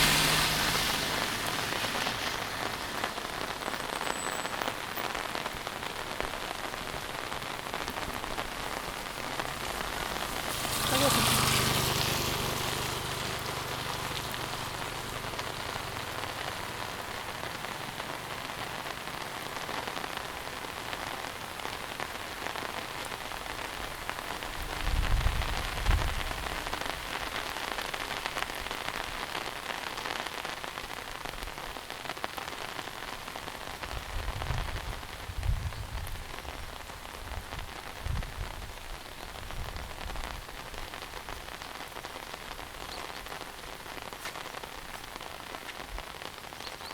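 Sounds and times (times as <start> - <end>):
heavy rain hissing: 0.0 - 46.9.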